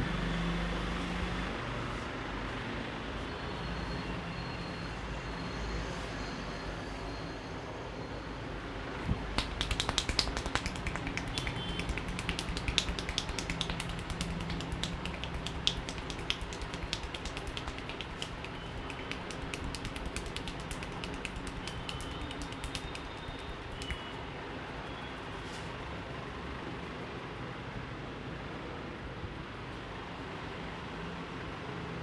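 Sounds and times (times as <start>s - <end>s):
low traffic hum: 0.0s - 7.0s, 7.6s - 32.0s
hands snapping and tapping on head: 9.3s - 24.2s.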